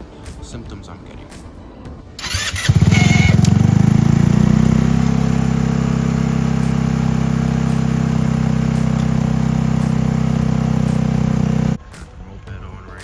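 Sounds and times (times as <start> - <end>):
moped engine idling: 2.2 - 11.8.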